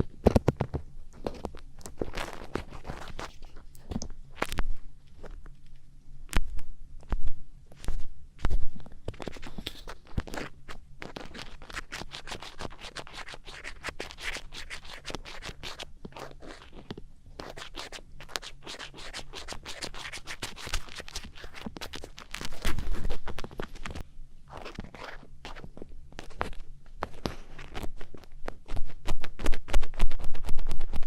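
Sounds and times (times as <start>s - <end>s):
earpick scratching microphone: 0.0s - 5.4s, 6.3s - 31.0s.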